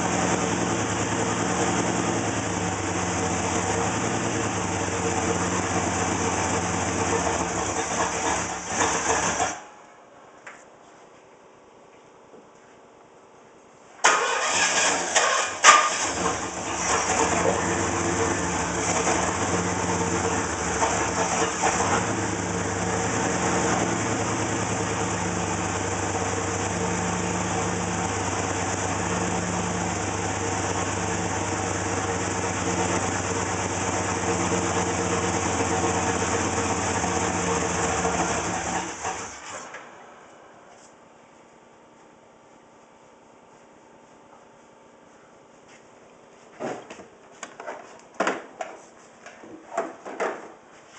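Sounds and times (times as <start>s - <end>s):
engine idling roughly: 0.0s - 9.7s, 14.1s - 39.6s.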